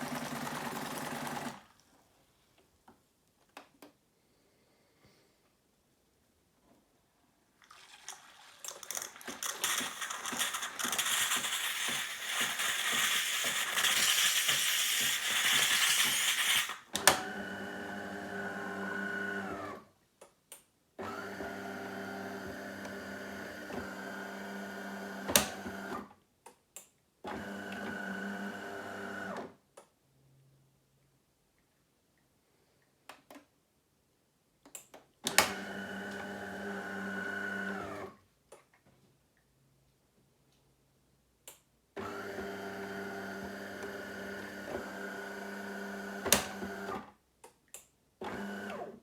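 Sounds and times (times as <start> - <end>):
coffee grinder whirring: 8.1 - 19.6, 21.1 - 25.9, 35.5 - 38.0, 42.0 - 47.0.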